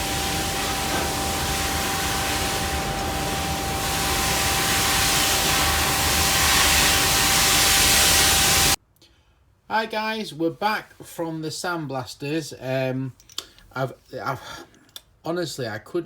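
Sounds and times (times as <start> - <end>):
machine hissing with thin whine: 0.0 - 8.8.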